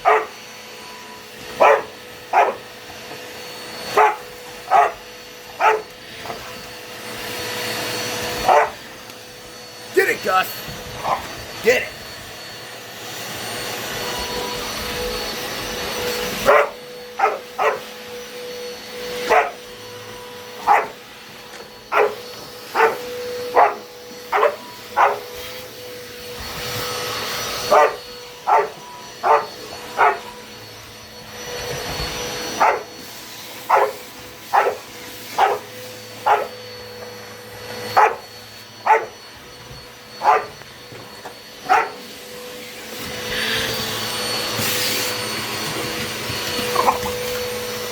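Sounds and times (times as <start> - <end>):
dog barking: 0.0 - 0.4, 1.5 - 2.7, 3.9 - 6.0, 8.4 - 8.8, 11.0 - 11.3, 16.4 - 17.9, 19.2 - 19.7, 20.6 - 21.0, 21.9 - 25.4, 27.7 - 30.3, 32.5 - 33.0, 33.6 - 36.6, 37.9 - 39.2, 40.2 - 40.6, 41.6 - 42.1, 46.7 - 47.2
vacuum cleaner droning: 0.0 - 47.9.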